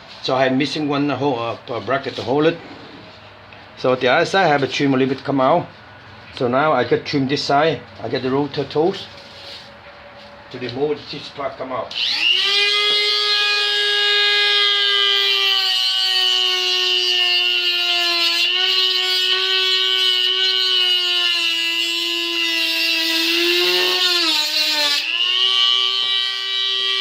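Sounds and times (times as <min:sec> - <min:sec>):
high-speed rotary tool whine: 0:11.9 - 0:27.0.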